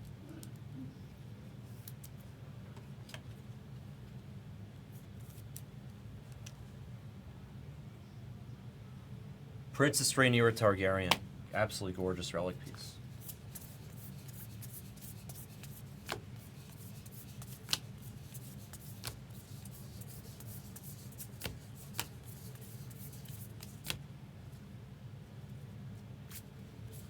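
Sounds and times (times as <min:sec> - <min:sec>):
steady low hum: 0:06.8 - 0:27.0
cards rustling: 0:12.6 - 0:24.0
sharp card clicks: 0:21.4 - 0:22.2.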